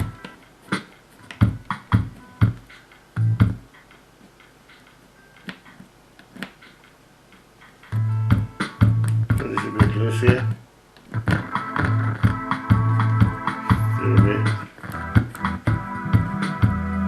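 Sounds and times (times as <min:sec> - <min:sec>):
keyboard music: 0:00.0 - 0:04.0, 0:07.6 - 0:10.6, 0:11.2 - 0:17.0
drum beat: 0:00.0 - 0:05.9, 0:06.6 - 0:17.0
deep bass notes: 0:03.2 - 0:03.5, 0:11.2 - 0:17.0.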